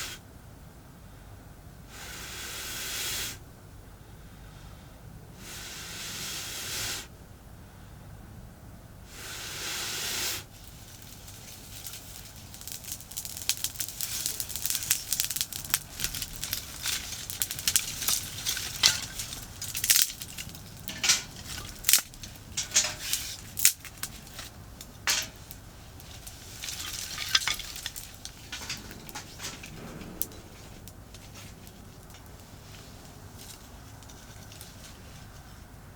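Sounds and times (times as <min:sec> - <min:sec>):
short hiss: 0:09.1 - 0:13.0
campfire crackling and popping: 0:10.4 - 0:35.3.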